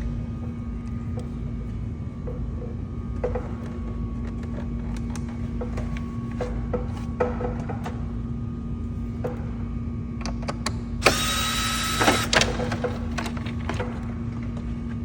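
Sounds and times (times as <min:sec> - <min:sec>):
steady low hum: 0:00.0 - 0:15.0
small motor whirring: 0:11.0 - 0:12.5.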